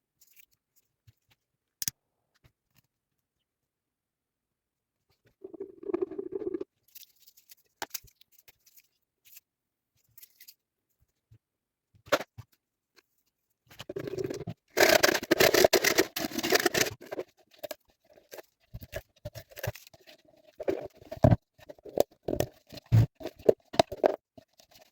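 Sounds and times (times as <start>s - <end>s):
handling clicks and scrapes: 13.7s - 24.9s
rough scraping: 13.9s - 18.4s.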